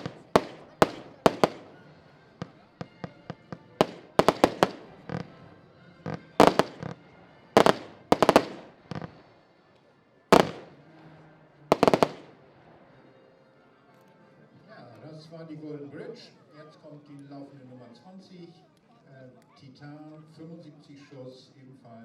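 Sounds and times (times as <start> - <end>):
fireworks bangs: 0.0 - 5.5, 6.1 - 7.0, 7.6 - 9.2, 10.4 - 10.9, 11.7 - 12.4.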